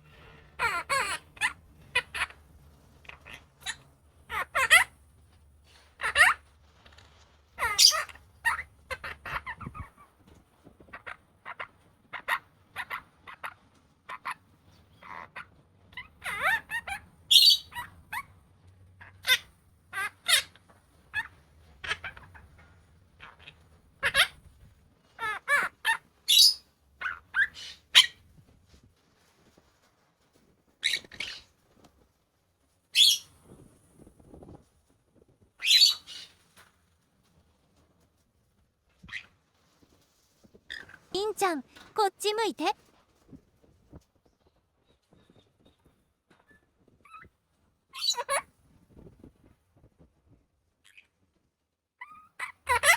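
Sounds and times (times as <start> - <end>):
parakeet chirps and squawks: 0.0 - 4.9, 5.7 - 6.9, 7.6 - 10.1, 10.8 - 18.4, 19.0 - 22.6, 23.2 - 24.4, 25.2 - 28.2, 30.8 - 31.6, 32.9 - 33.3, 35.6 - 36.4, 39.1 - 39.3, 47.9 - 48.5, 50.9 - 51.1, 52.0 - 52.9.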